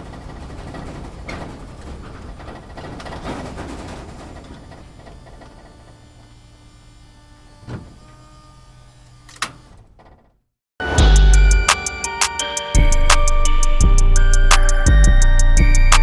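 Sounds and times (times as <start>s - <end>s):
vehicle rumbling and rattling: 0.0s - 9.0s
engine hum: 0.0s - 9.2s.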